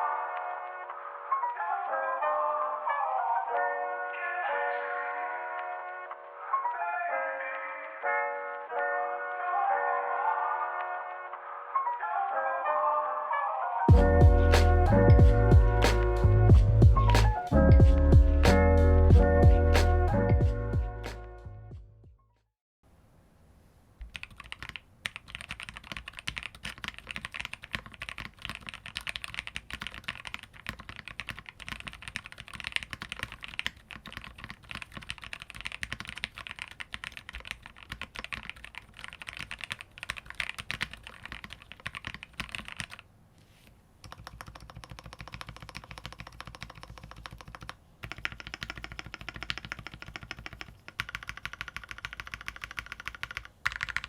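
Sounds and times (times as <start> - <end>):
keyboard typing: 24.0 - 43.0, 44.0 - 54.0.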